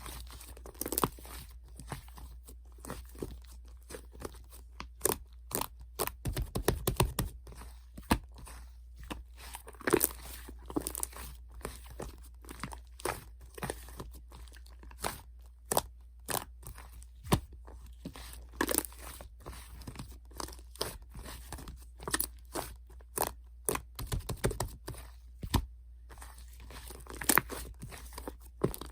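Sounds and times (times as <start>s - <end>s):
low steady hum: 0.0s - 28.9s.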